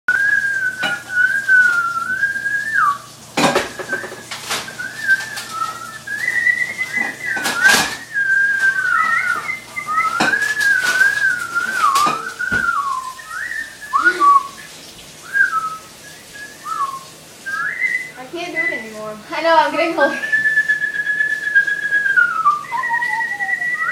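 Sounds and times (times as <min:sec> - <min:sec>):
person whistling a tune: 0:00.1 - 0:19.0, 0:20.1 - 0:23.9
kitchen dishes clinking: 0:00.7 - 0:01.9, 0:03.4 - 0:12.8.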